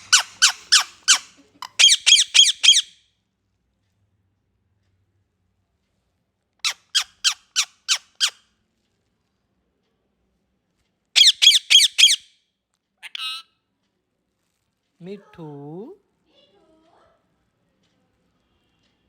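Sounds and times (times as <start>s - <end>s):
parakeet squawking: 0.0s - 2.9s, 6.6s - 8.4s, 11.2s - 12.2s, 13.0s - 13.5s.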